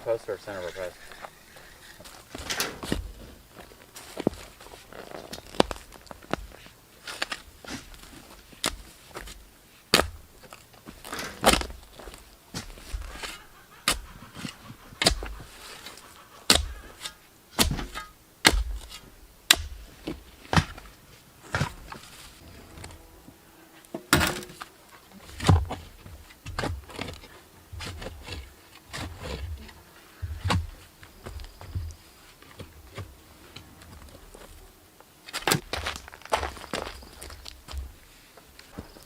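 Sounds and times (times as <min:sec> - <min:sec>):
sharp knocks and thuds: 0:17.6 - 0:20.9, 0:25.4 - 0:32.0.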